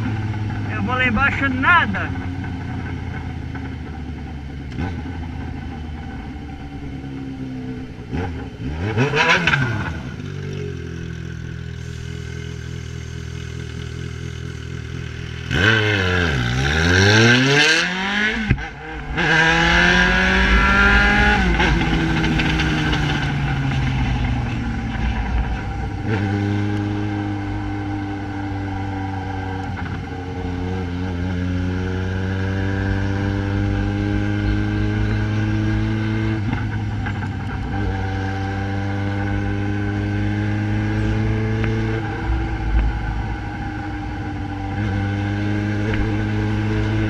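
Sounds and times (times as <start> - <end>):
motorcycle engine revving: 0.0 - 47.0.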